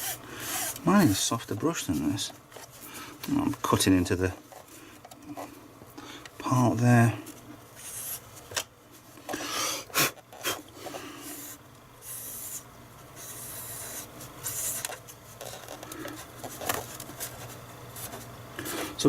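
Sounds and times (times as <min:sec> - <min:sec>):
brush scrubbing printer head: 0:00.0 - 0:02.3.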